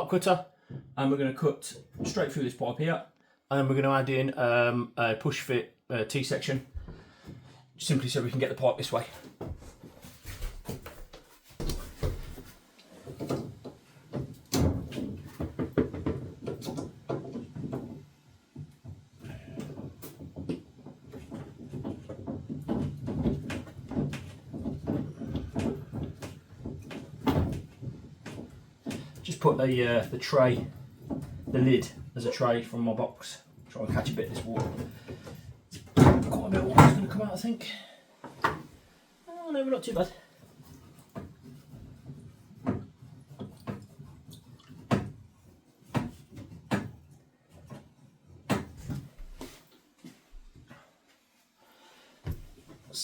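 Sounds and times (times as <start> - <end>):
tools knocking and clunking: 11.6 - 29.3.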